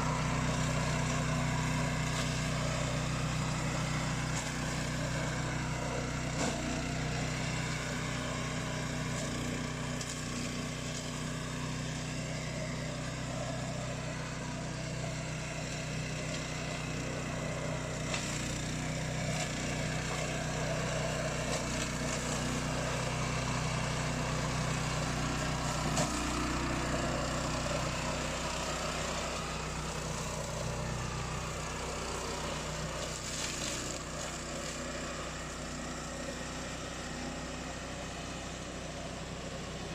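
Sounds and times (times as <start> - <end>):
mower engine droning: 0.0 - 39.9.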